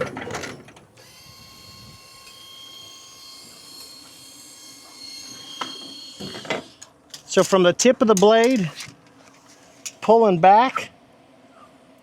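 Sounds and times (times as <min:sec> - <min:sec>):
mower motor whine: 0:00.0 - 0:06.9.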